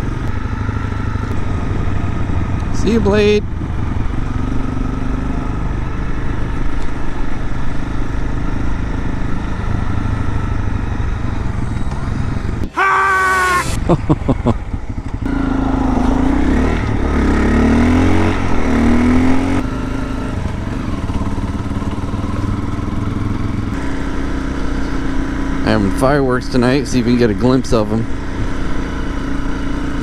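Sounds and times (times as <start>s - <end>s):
motorcycle engine revving: 0.0s - 30.0s
loud pitched tone: 12.6s - 14.0s.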